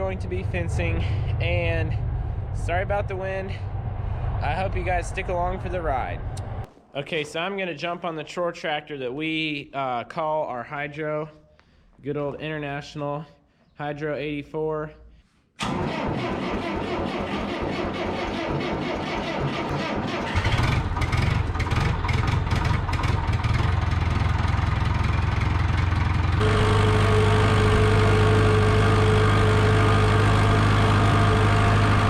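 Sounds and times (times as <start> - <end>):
tractor diesel engine starting: 0.0 - 3.6, 15.6 - 32.0
constant whine: 0.0 - 6.7, 20.4 - 32.0.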